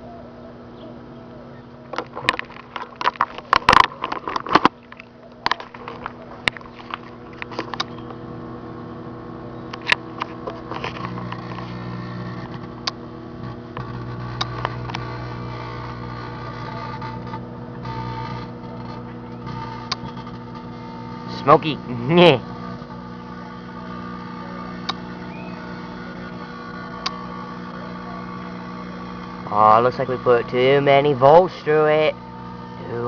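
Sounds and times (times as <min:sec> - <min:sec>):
microwave oven humming: 0:00.0 - 0:33.0
electrical arcing snaps and crackles: 0:09.7 - 0:32.2.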